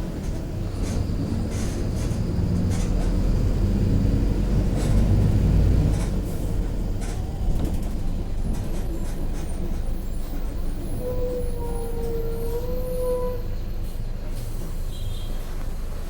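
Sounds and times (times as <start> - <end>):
bus body rattling and knocking: 0.0 - 10.9
bus diesel engine: 0.0 - 16.0.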